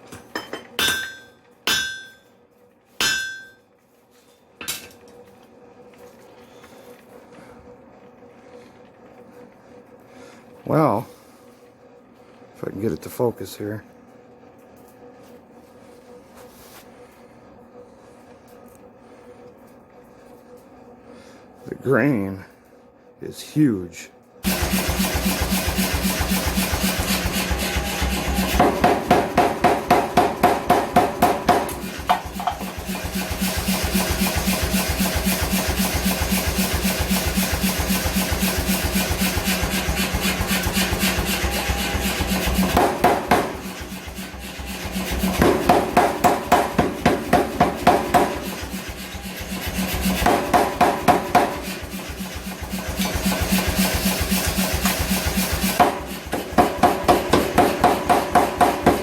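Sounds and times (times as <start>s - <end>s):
hammer striking iron: 0.1s - 2.2s, 3.0s - 3.6s, 28.5s - 32.7s, 41.9s - 44.0s, 44.6s - 48.8s, 49.8s - 51.8s, 53.0s - 59.0s.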